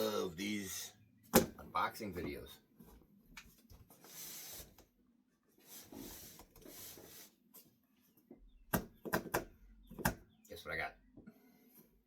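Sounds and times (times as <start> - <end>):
faint rubbing and rustling: 2.3 - 8.3.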